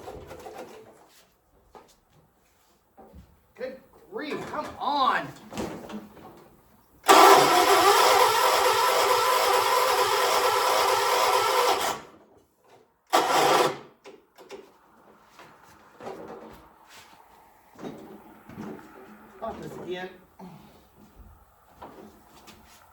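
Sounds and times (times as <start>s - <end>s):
starter cranking tractor engine: 7.0s - 14.6s.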